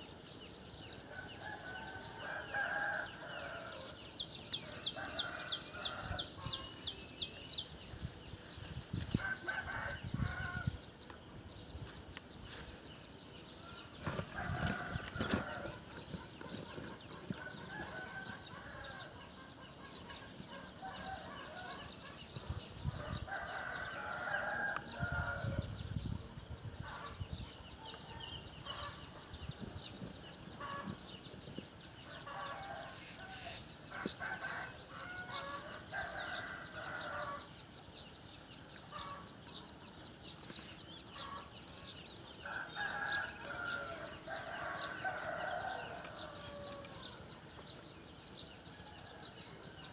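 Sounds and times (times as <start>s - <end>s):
rooster crowing: 23.0s - 25.6s, 42.4s - 47.1s.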